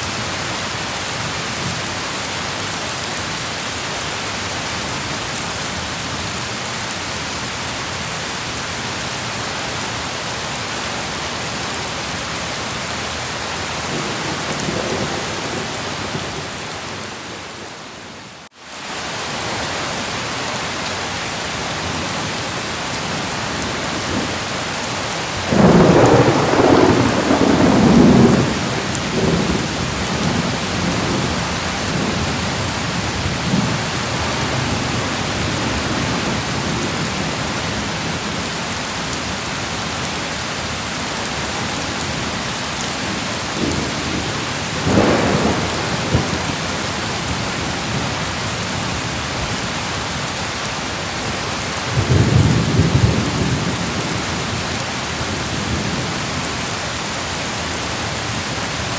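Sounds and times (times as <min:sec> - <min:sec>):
heavy rain falling: 0:00.0 - 0:58.9
thunder rumbling: 0:13.9 - 0:17.8, 0:25.3 - 0:37.4, 0:43.0 - 0:48.3.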